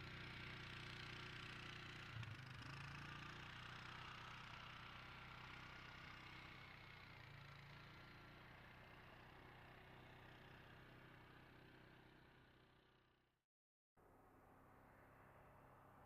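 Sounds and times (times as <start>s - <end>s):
faint atv engine running: 0.0s - 13.2s.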